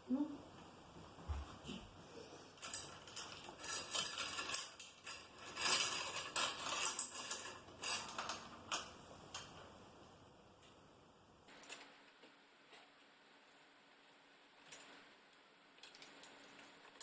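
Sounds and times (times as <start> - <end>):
bicycle parts clinking and rattling: 2.6 - 9.6, 11.5 - 12.0, 14.6 - 17.0.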